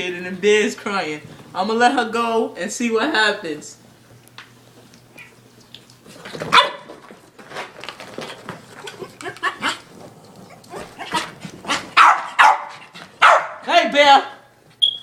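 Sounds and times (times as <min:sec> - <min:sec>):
small dogs barking and yipping: 0:06.5 - 0:06.9, 0:08.9 - 0:13.6.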